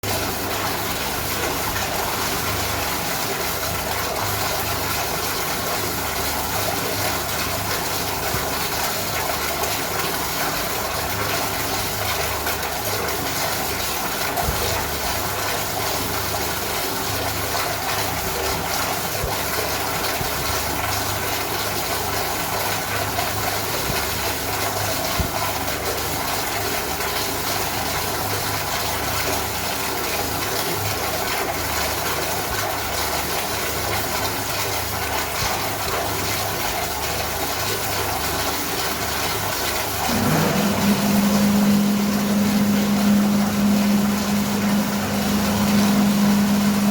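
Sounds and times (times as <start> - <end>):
toilet flush running water: 0.0 - 46.9
wavering low rumble: 40.0 - 46.9.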